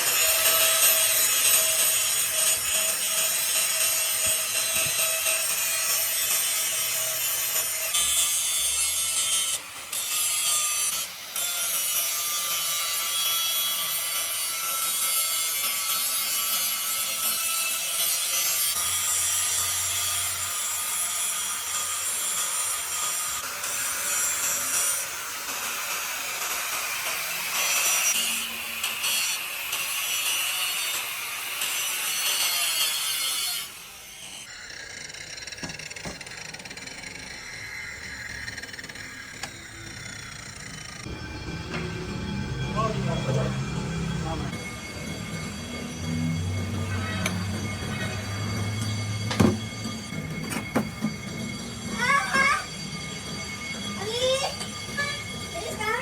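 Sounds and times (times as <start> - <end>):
tool rasping on metal: 0.0 - 41.2.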